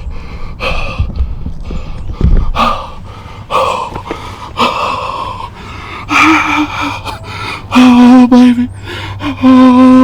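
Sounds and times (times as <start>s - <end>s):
low thumps: 0.0s - 3.0s
man breathing hard: 0.0s - 9.6s.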